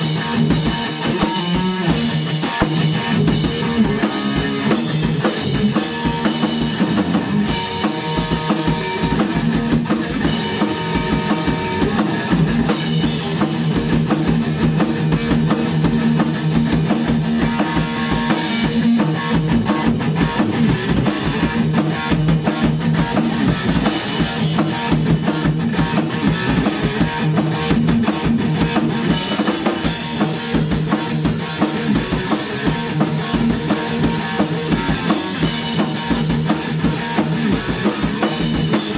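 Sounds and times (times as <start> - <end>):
drum kit beat: 0.0 - 38.9
guitar: 0.0 - 38.9.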